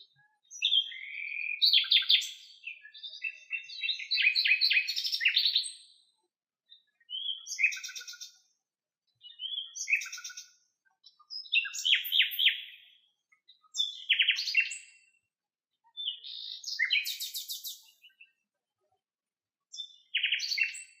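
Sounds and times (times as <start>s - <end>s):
nightingale singing: 0.4s - 5.9s, 7.0s - 8.4s, 9.2s - 15.1s, 15.9s - 18.4s, 19.8s - 21.0s.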